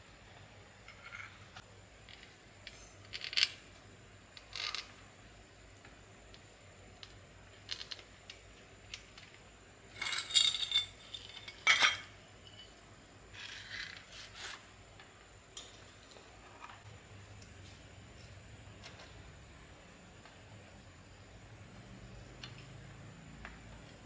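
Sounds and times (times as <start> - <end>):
metal parts clinking: 9.9 - 12.7.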